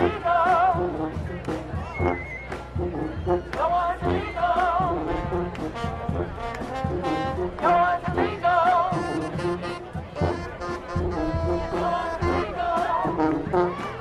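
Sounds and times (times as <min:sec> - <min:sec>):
brass marching band: 0:00.0 - 0:14.0
drum hits: 0:04.8 - 0:08.2.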